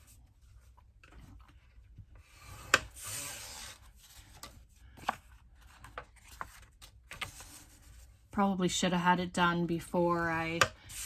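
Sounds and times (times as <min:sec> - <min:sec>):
scoring tool scraping cardstock: 0:02.2 - 0:04.5.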